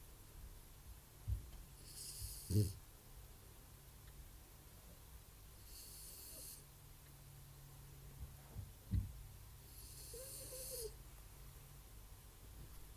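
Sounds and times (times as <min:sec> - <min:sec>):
dog snoring: 0:01.8 - 0:02.8, 0:05.6 - 0:06.7, 0:09.6 - 0:11.0.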